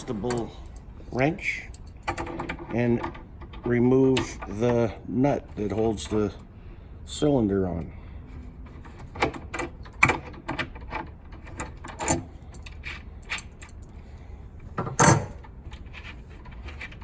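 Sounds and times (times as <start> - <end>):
wrench metal clicks and clinks: 0.0 - 0.9, 14.9 - 15.5
loud metal clank: 14.8 - 15.4.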